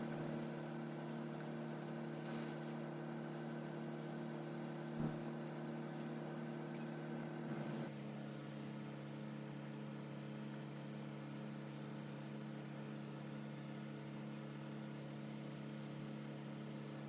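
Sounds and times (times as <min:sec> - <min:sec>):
machine humming: 0:00.0 - 0:10.3.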